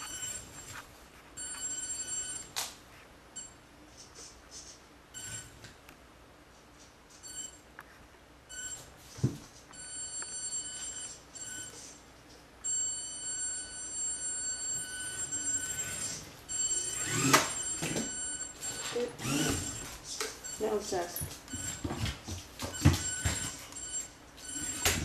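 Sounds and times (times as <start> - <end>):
small electric motor whining: 15.5 - 18.0, 18.7 - 20.0.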